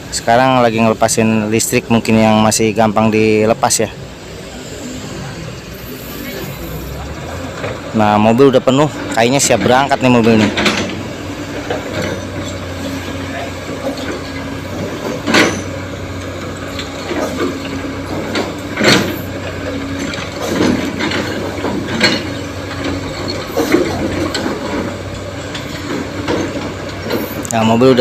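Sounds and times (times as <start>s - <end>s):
heavy diesel machinery running: 0.0s - 28.0s
sharp metallic clanks: 9.1s - 27.8s.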